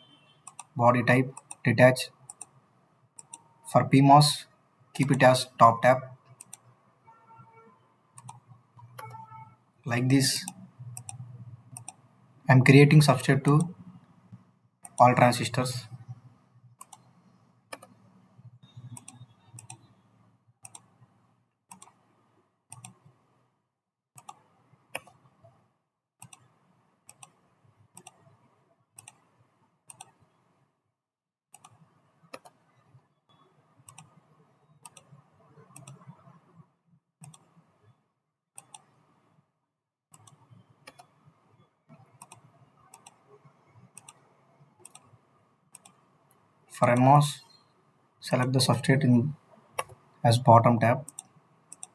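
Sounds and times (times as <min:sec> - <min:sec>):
mouse and keyboard clicks: 0:00.5 - 0:01.6, 0:02.3 - 0:02.6, 0:03.2 - 0:03.5, 0:08.2 - 0:09.2, 0:10.4 - 0:12.0, 0:16.8 - 0:18.1, 0:18.8 - 0:19.9, 0:20.6 - 0:21.0, 0:21.7 - 0:22.0, 0:22.7 - 0:23.1, 0:24.2 - 0:25.3, 0:26.2 - 0:27.4, 0:28.0 - 0:28.4, 0:29.0 - 0:29.3, 0:29.9 - 0:30.2, 0:31.5 - 0:32.6, 0:33.9 - 0:34.2, 0:34.8 - 0:36.4, 0:37.2 - 0:37.6, 0:38.6 - 0:39.0, 0:40.1 - 0:41.2, 0:41.9 - 0:43.2, 0:44.8 - 0:47.6, 0:49.8 - 0:50.0, 0:51.0 - 0:51.9.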